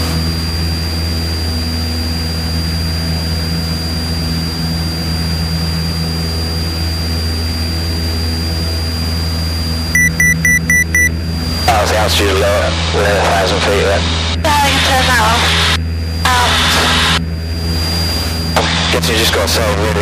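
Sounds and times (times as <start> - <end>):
propeller aircraft engine drone: 0.0 - 20.0
thin high whine: 6.2 - 20.0.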